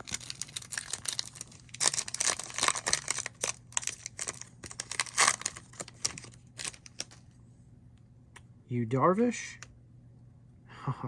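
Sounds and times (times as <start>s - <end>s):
foil wrapper crinkling: 0.0s - 7.2s.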